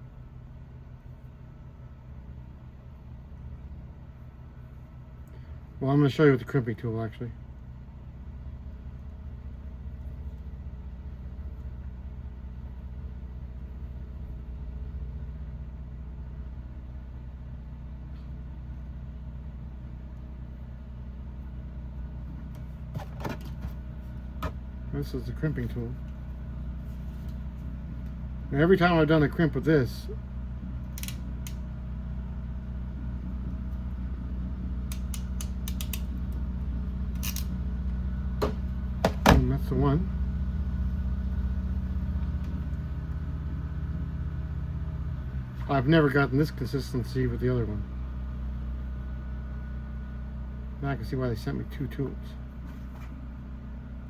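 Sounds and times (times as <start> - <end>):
low mechanical hum: 0.0 - 54.0
crimping tool ratchet clicks: 30.9 - 31.6, 34.9 - 36.2, 37.2 - 37.5.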